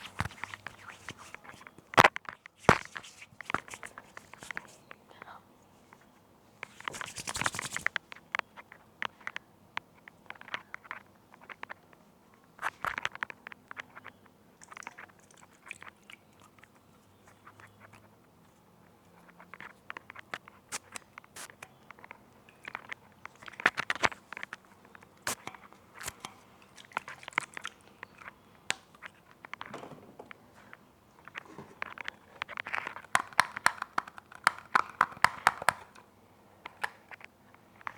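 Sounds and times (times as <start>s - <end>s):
crunching and crackling: 12.6s - 37.9s.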